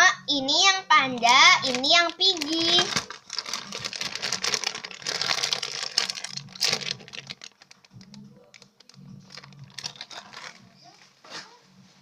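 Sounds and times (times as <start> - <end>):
plastic crinkling: 1.1 - 11.6.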